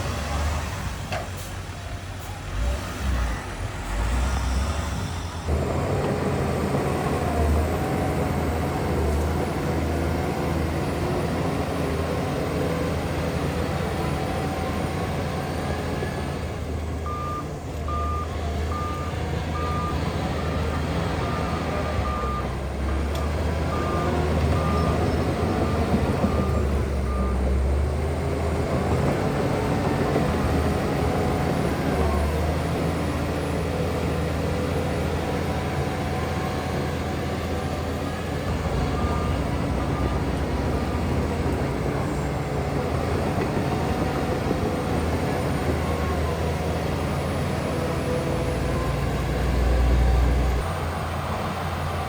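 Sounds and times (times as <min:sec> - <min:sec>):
heavy diesel machinery running: 0:00.0 - 0:52.0
reversing alarm beeping: 0:17.0 - 0:22.6, 0:23.7 - 0:27.7, 0:38.5 - 0:41.0.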